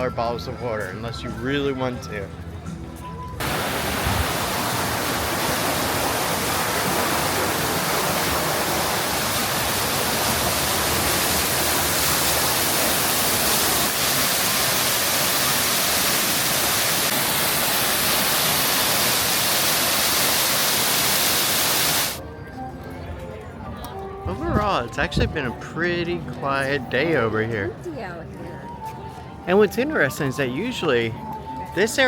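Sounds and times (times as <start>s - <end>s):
water falling and splashing: 3.4s - 22.2s.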